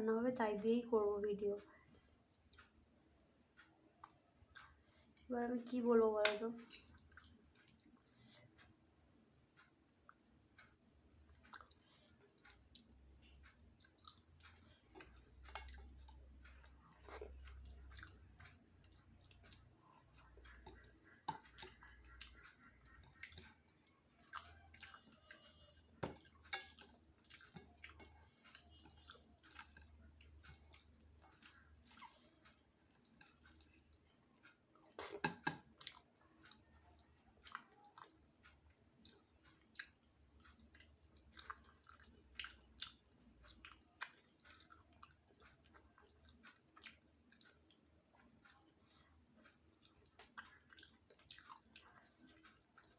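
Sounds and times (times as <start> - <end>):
person chewing food: 2.0 - 2.9, 3.5 - 5.3, 6.8 - 52.9.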